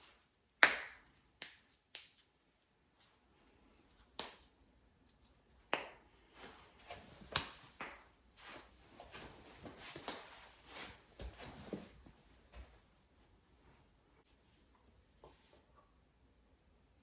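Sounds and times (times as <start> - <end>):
clothing rustling: 6.3 - 14.7.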